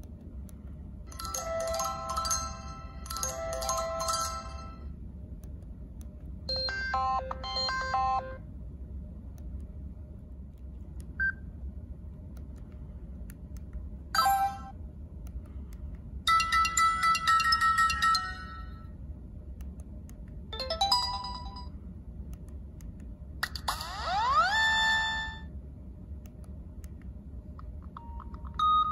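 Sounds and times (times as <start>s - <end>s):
steady low hum: 0.0s - 28.9s
phone ringtone snippets: 1.1s - 4.8s.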